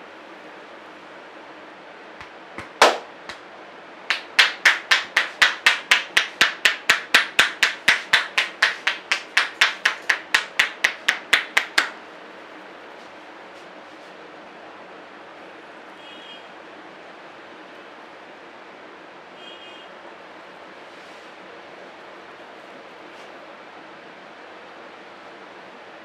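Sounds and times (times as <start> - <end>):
hands slapping head in massage: 2.2 - 3.4, 4.1 - 12.0.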